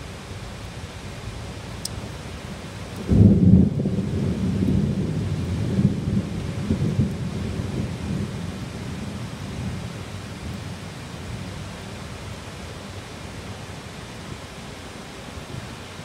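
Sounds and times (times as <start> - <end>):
heavy rain hiss: 0.0 - 16.0
thunder crack and rumble: 2.9 - 10.0.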